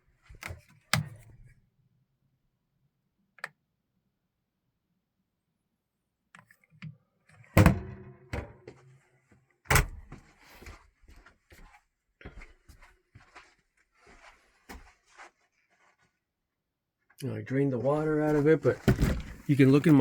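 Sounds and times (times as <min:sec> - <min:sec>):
door knocks and clatter: 0:18.8 - 0:19.5.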